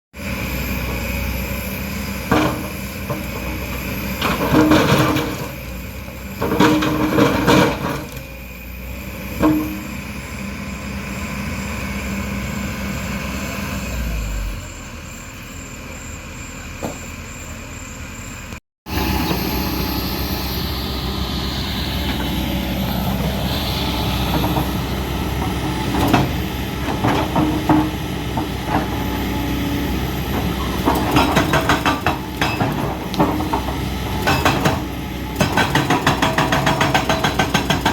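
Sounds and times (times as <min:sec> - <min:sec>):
diesel engine running: 0:00.2 - 0:37.9
bucket clanking and scraping: 0:02.3 - 0:05.6, 0:06.4 - 0:08.2, 0:24.3 - 0:29.3, 0:30.3 - 0:37.9.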